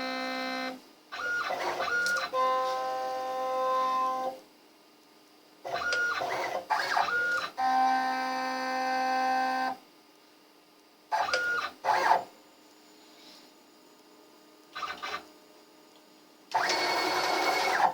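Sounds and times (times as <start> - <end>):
stepper motors whining: 16.5 - 17.9.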